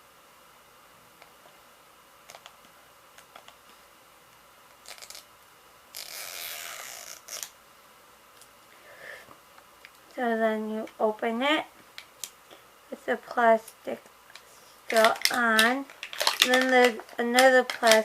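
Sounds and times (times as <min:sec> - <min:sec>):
plastic wrap crinkling: 0:04.8 - 0:05.3, 0:14.3 - 0:18.0.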